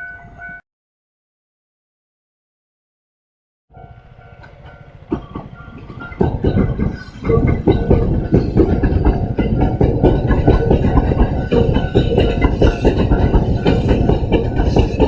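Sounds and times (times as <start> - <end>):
train rumble: 3.7 - 15.0
wheels clattering over rail joints: 3.8 - 15.0.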